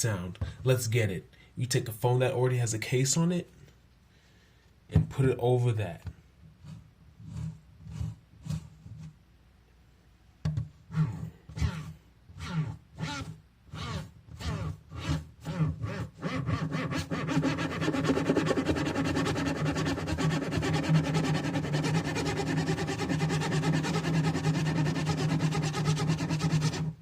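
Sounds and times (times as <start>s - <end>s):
harsh rasping buzz: 10.9s - 27.0s.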